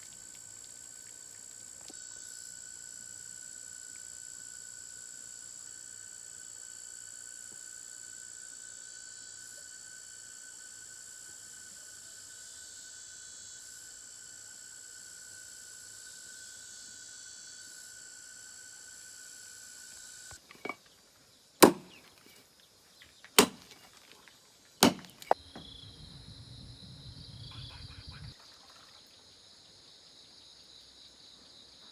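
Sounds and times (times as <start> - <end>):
insects trilling: 0.0 - 21.0, 24.8 - 31.9
loud sharp knocks: 21.6 - 22.0, 23.4 - 23.6, 24.8 - 25.4
low rumble: 25.8 - 28.3.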